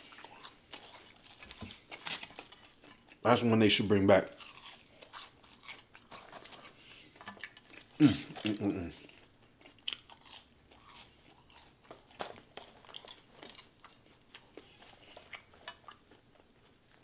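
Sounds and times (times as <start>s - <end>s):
person chewing food: 0.0s - 3.2s, 4.3s - 17.0s.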